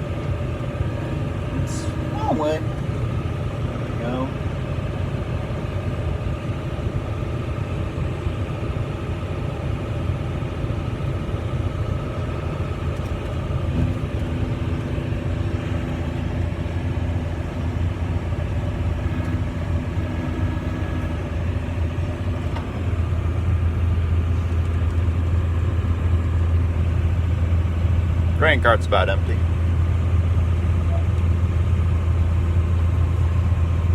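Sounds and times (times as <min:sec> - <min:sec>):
grain auger running: 0:00.0 - 0:05.7, 0:12.2 - 0:33.9
tractor engine running under load: 0:00.0 - 0:33.9
steady tone: 0:00.8 - 0:04.8.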